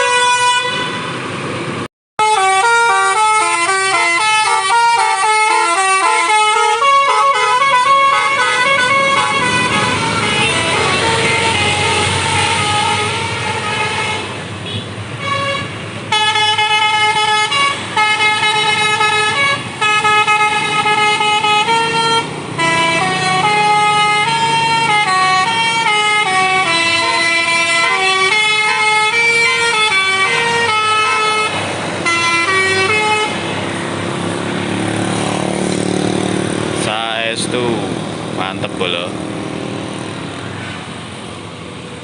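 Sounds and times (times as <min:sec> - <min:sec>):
bus air horn melody: 0:00.0 - 0:01.1, 0:02.2 - 0:33.5
engine noise: 0:00.0 - 0:42.0.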